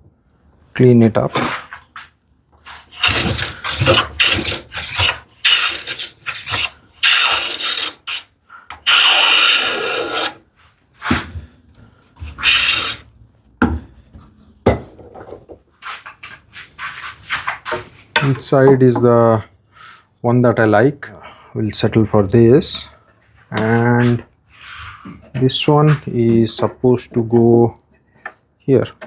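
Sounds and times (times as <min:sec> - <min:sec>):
hand plane shaving wood: 0:02.7 - 0:10.4, 0:12.2 - 0:13.0.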